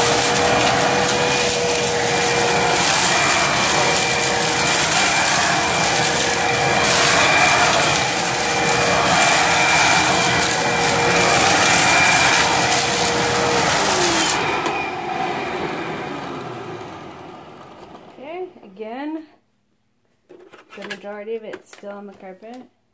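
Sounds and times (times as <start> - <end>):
vacuum motor winding down: 0.0 - 18.2
vacuum cleaner running: 0.0 - 18.5.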